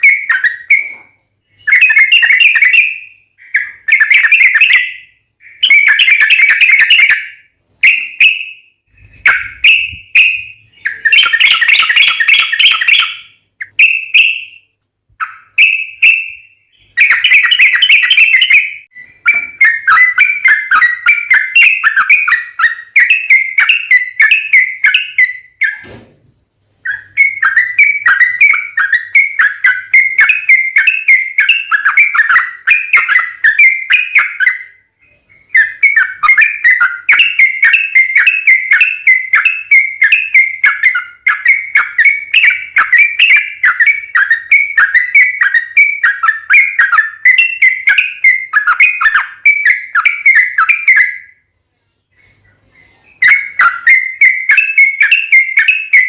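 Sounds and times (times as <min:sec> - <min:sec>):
bulbuls singing: 0:00.0 - 0:26.1, 0:26.8 - 0:56.0.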